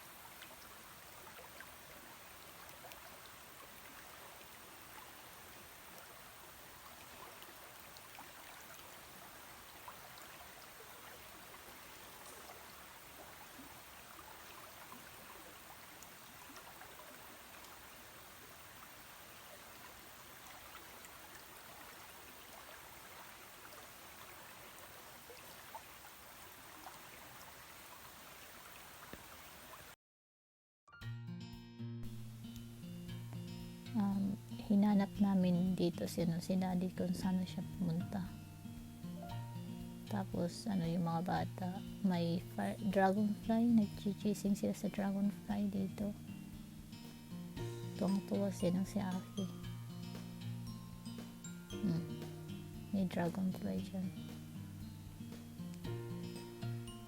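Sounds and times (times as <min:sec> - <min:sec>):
river running over stones: 0:00.0 - 0:29.9.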